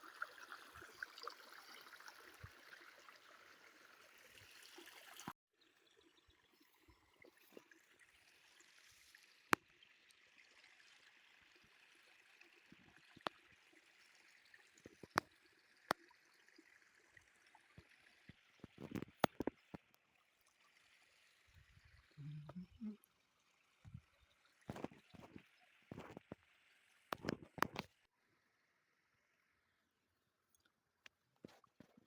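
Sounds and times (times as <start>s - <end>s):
faint running water: 0.0s - 28.1s.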